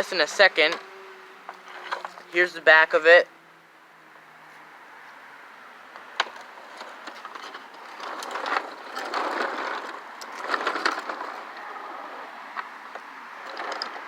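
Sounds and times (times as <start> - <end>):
plastic handling rustles and knocks: 1.5 - 2.3, 6.2 - 11.5.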